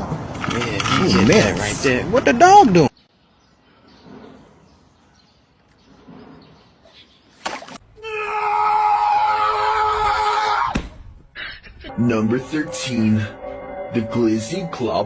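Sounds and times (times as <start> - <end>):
loud scream: 8.0 - 10.8.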